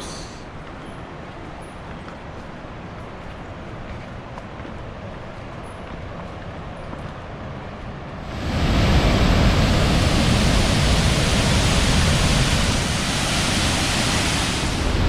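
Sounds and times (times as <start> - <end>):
waterfall rushing: 8.3 - 15.0.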